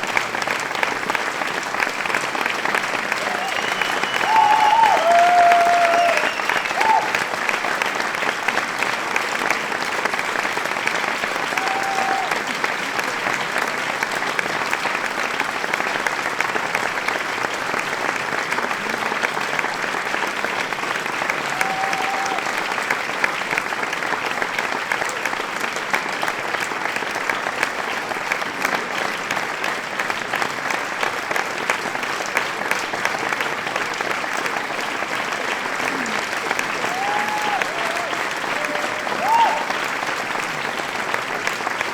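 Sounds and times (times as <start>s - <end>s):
large crowd applauding: 0.0s - 41.9s
pitched calls from crowd: 3.1s - 7.2s, 35.9s - 40.1s.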